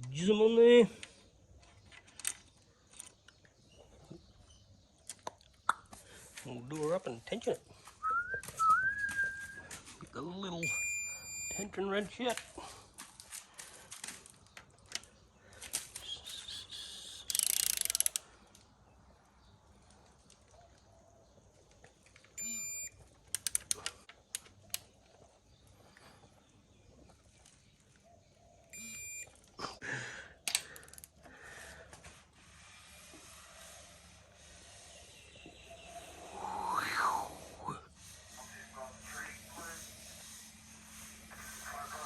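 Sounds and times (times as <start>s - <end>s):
short electronic beeps: 10.6s - 11.7s, 22.4s - 22.9s, 28.8s - 29.3s
short hissing rush: 36.1s - 42.0s.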